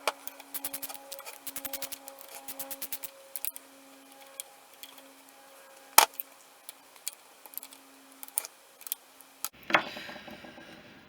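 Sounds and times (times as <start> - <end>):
metallic clicks of hand tools: 0.0 - 5.4
faint steady hum: 0.0 - 10.9.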